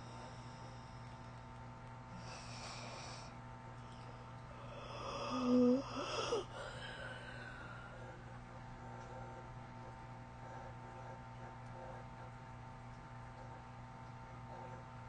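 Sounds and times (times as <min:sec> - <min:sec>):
steady low hum: 0:00.0 - 0:15.0
airy breath: 0:02.1 - 0:08.1
person snoring: 0:02.2 - 0:03.3, 0:04.6 - 0:08.0.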